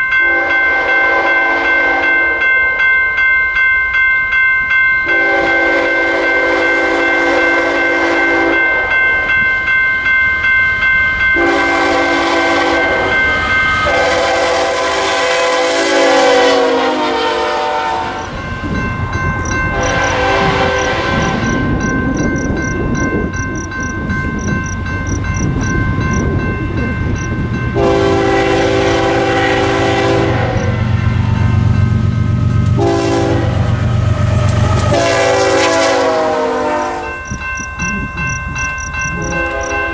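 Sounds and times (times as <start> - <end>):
train wheels on rails: 0.0 - 39.9
locomotive air horn blasts: 0.2 - 2.4, 5.1 - 8.8, 11.4 - 18.4, 19.7 - 21.7, 27.8 - 31.7, 32.7 - 37.3, 39.1 - 39.9
locomotive engine rumble: 11.4 - 39.9.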